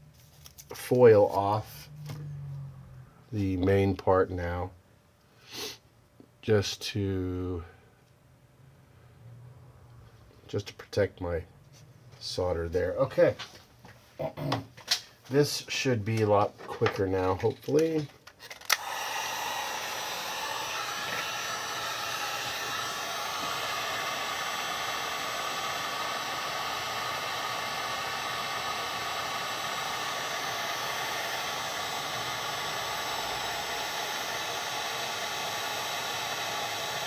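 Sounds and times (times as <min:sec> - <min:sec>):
heat gun blowing: 0:05.5 - 0:05.8, 0:18.5 - 0:37.0.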